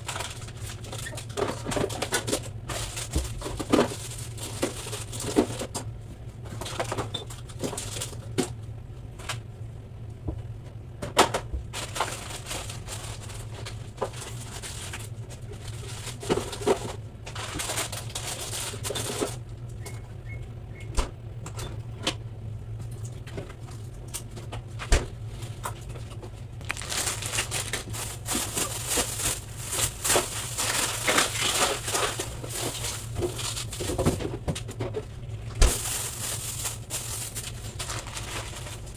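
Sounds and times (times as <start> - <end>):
steady low hum: 0.0 - 38.9
plastic crinkling: 26.6 - 34.3, 35.6 - 38.9.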